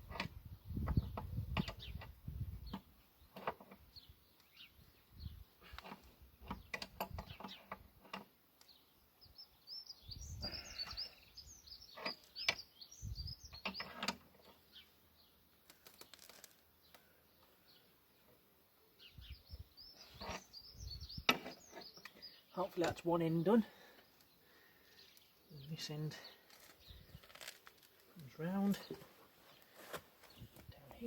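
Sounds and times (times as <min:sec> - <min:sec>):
bird chirping: 0:08.6 - 0:31.0.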